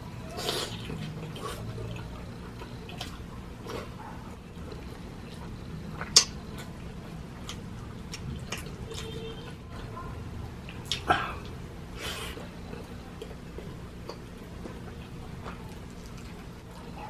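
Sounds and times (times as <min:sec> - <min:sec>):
wet mouth chewing smacks: 0:04.6 - 0:06.8, 0:07.4 - 0:09.2, 0:10.6 - 0:16.5.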